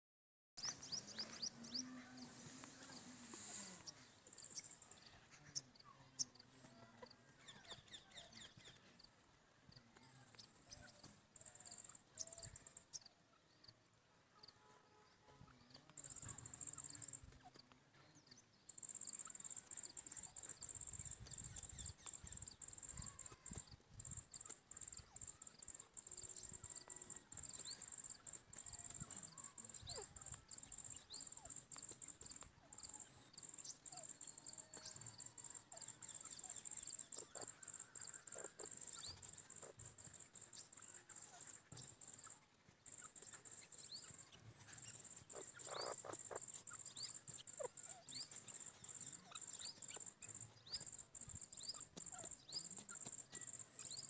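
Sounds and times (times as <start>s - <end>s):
cricket chirping: 0.6s - 8.6s, 15.7s - 17.6s, 18.6s - 54.0s
francolin clucking calls: 18.8s - 54.0s.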